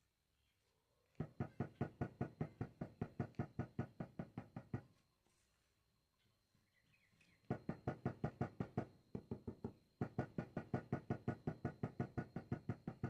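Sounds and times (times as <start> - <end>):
rapid tapping on ceramic tile: 1.2 - 4.8, 7.5 - 13.0.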